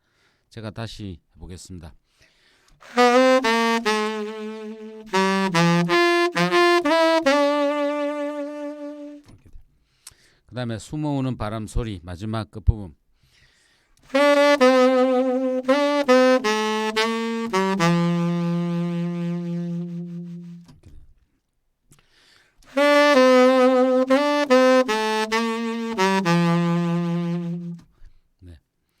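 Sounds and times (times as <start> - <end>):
saxophone melody: 2.8 - 9.3, 14.1 - 20.8, 22.7 - 27.9.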